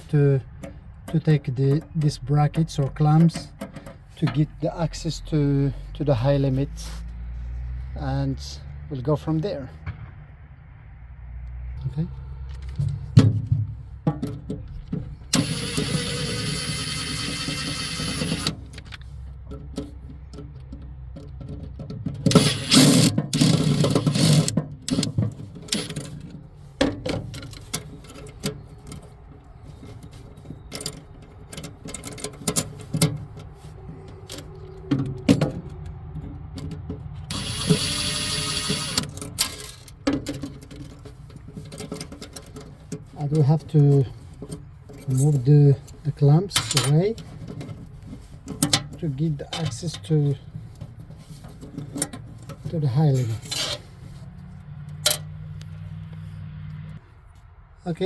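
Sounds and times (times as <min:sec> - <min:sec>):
tools and metal parts clicking: 0:00.5 - 0:04.4, 0:12.5 - 0:54.1, 0:54.8 - 0:55.8
rattling clatter: 0:12.5 - 0:55.5
electric screwdriver whirring: 0:15.3 - 0:18.7, 0:22.3 - 0:24.5, 0:37.3 - 0:39.2.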